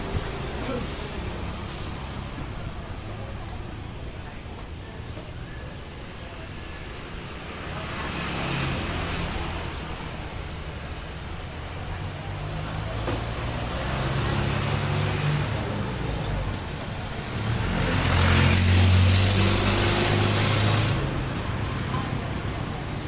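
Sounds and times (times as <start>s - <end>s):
engine revving: 17.3s - 21.4s.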